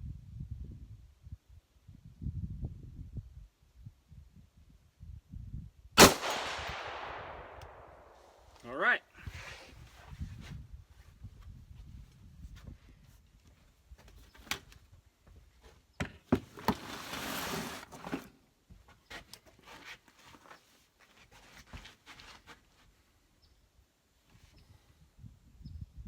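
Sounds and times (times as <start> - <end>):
rustle: 6.0 - 24.9.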